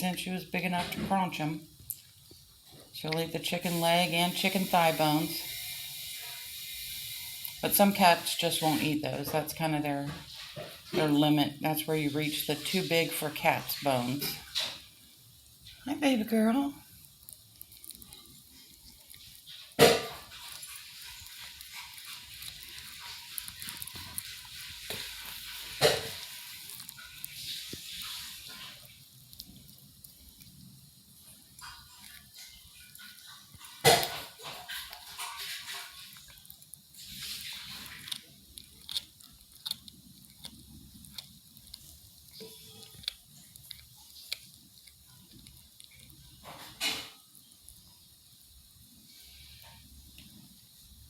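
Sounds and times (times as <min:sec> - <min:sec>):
cat chewing and tearing meat: 0:12.0 - 0:15.8, 0:16.4 - 0:51.0.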